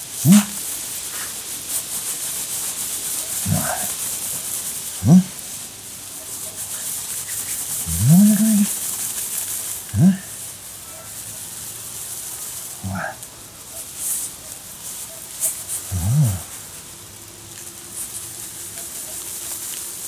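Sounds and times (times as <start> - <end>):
man making wordless vocal sounds: 0.2 - 0.6, 3.5 - 3.9, 5.0 - 5.4, 7.8 - 8.8, 9.9 - 10.3, 12.8 - 13.2.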